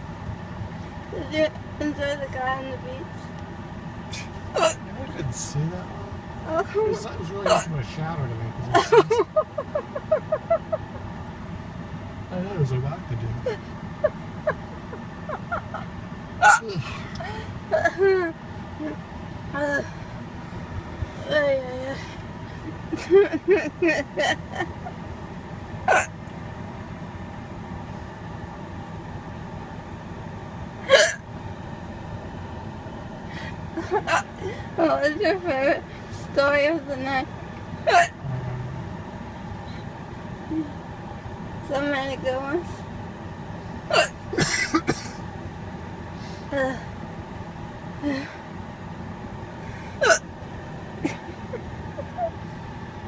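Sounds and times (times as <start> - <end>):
low car cabin hum: 0.0 - 53.0
woman hiccuping: 4.1 - 4.9, 7.4 - 7.7, 16.4 - 16.8, 25.9 - 26.1, 30.9 - 31.2, 34.0 - 34.4, 37.9 - 38.2, 43.9 - 45.0, 46.5 - 46.9, 50.0 - 50.2.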